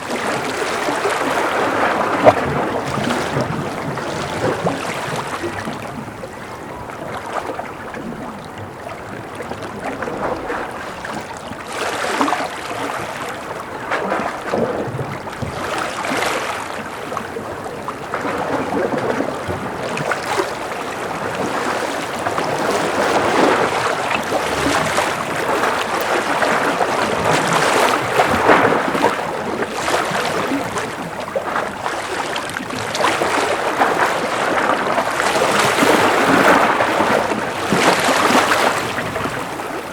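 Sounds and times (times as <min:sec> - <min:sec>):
sea waves lapping and splashing: 0:00.0 - 0:39.9.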